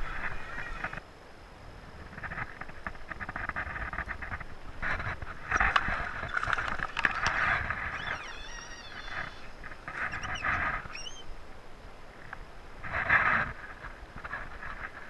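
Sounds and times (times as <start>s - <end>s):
birds warbling and chirping: 5.5s - 11.4s.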